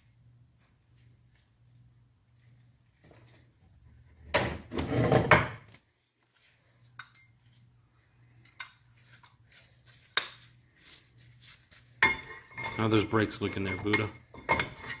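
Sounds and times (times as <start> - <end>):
metal tools clanking: 12.0 - 15.0.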